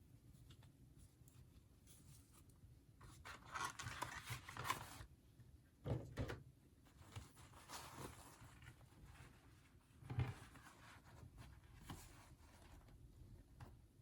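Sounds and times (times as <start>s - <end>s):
packaging rustling and scraping: 3.1s - 5.1s, 6.9s - 9.4s.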